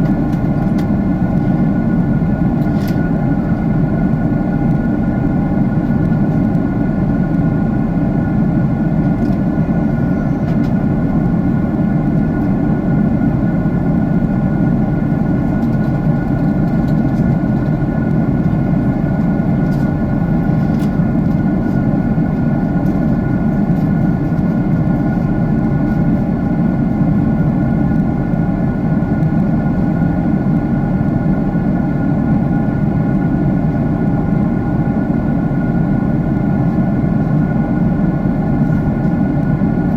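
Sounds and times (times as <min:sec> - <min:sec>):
constant hums: 0:00.0 - 0:39.9
jet cabin engine roar: 0:00.0 - 0:39.9.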